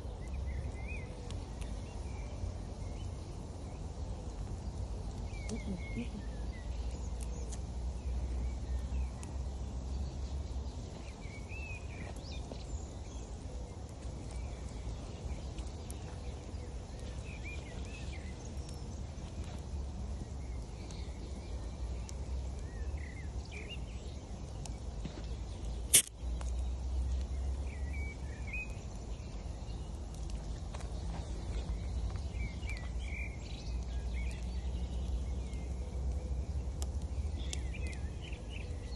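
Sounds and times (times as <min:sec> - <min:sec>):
small birds chirping: 0:00.0 - 0:38.9
sharp crack: 0:25.8 - 0:26.6.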